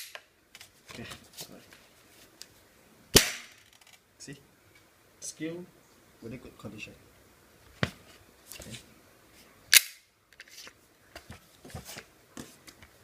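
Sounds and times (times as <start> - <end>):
airsoft pistol shot: 3.2 - 3.6
pistol handling clicks: 9.7 - 10.0.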